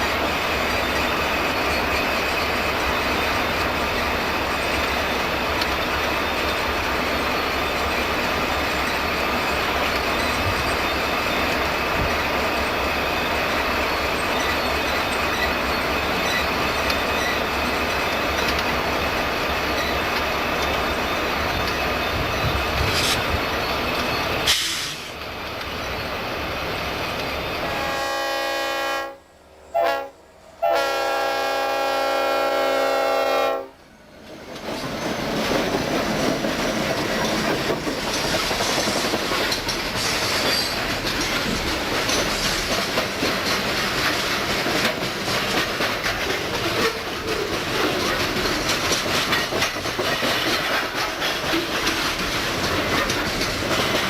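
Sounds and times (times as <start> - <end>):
freight train rolling past: 0.0 - 54.0
locomotive air horn blasts: 27.6 - 33.8.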